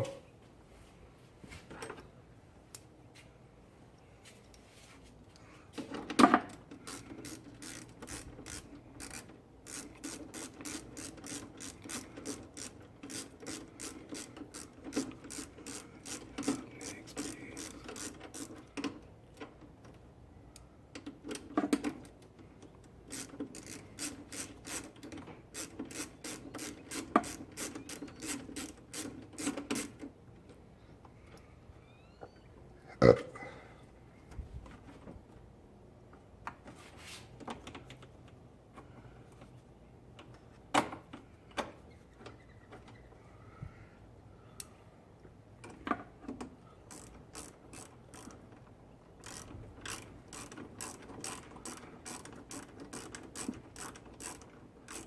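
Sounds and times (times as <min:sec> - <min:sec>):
hand ratchet clicking: 0:06.5 - 0:19.5, 0:23.0 - 0:30.1, 0:46.3 - 0:48.5, 0:49.2 - 0:55.0.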